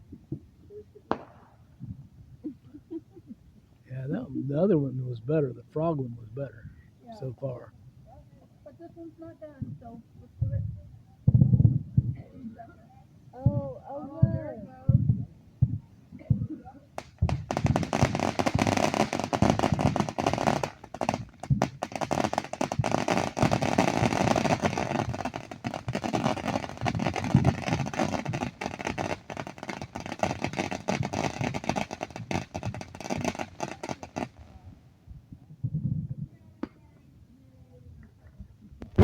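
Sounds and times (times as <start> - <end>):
firework crackles and pops: 0.0 - 2.1, 9.5 - 12.2, 14.2 - 34.8, 38.8 - 39.0.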